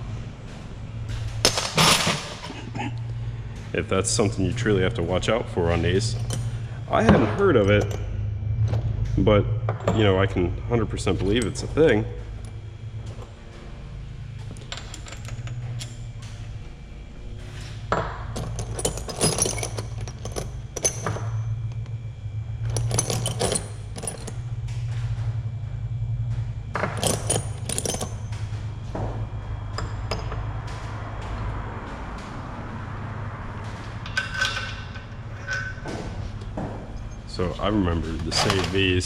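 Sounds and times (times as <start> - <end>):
steady low hum: 0.0 - 39.0
metal parts clinking: 1.4 - 2.8, 5.8 - 8.0, 14.5 - 16.3, 18.4 - 21.8, 22.6 - 25.0, 26.8 - 28.5, 33.7 - 36.0.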